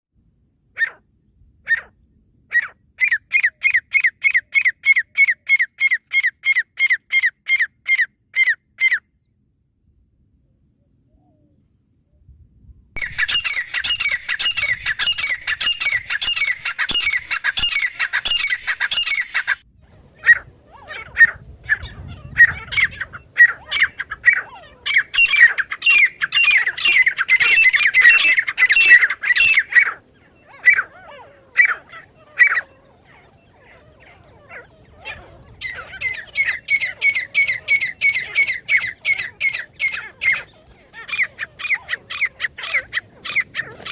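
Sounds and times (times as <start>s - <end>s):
bird calling sharp repeated notes: 13.0s - 19.6s, 21.2s - 31.0s.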